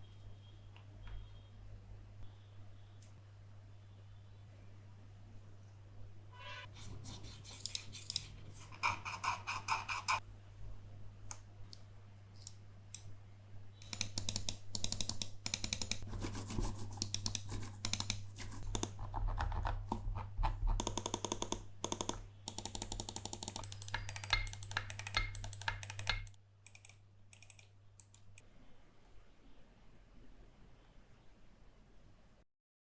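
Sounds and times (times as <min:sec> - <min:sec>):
mouse clicking: 0:13.8 - 0:28.4.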